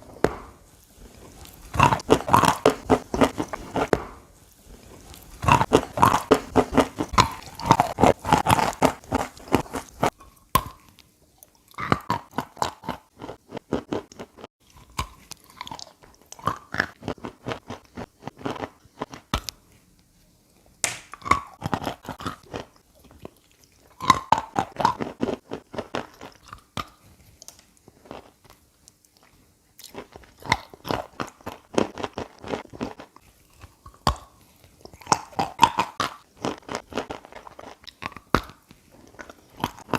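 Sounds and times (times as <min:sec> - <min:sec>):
chalk being chewed: 0:04.7 - 0:20.1.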